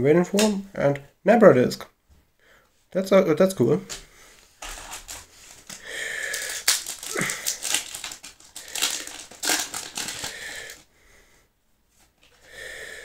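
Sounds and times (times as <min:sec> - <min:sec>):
foil wrapper crinkling and tearing: 0:04.6 - 0:10.9.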